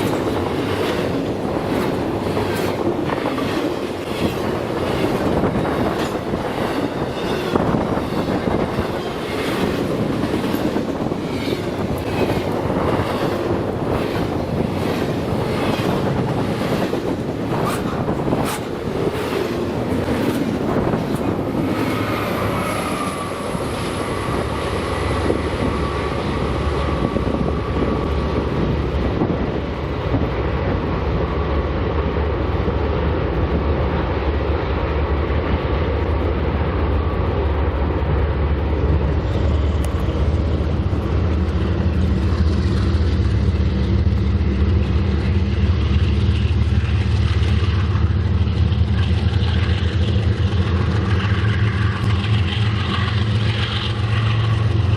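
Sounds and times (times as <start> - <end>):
freight train rumbling on rails: 0.0 - 54.9.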